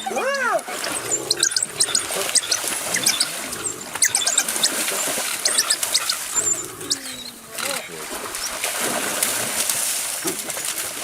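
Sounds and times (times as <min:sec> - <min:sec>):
high-pitched animal squeaks: 0:00.0 - 0:03.4, 0:04.0 - 0:07.8.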